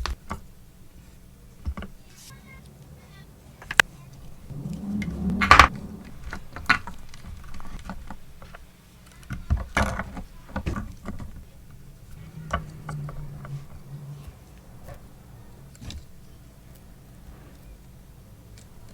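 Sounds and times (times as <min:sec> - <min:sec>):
small tools clicking and knocking: 0:04.5 - 0:18.9.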